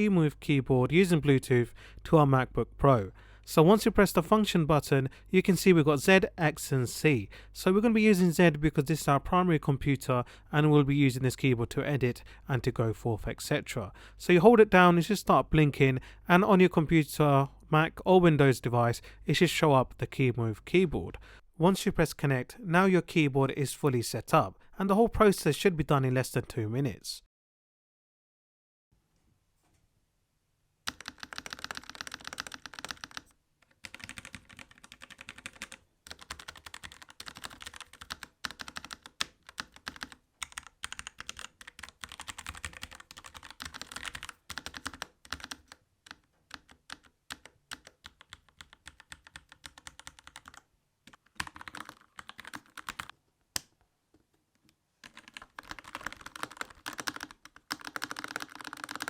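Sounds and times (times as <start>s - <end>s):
fast typing on a keyboard: 30.9s - 53.1s, 55.0s - 59.0s.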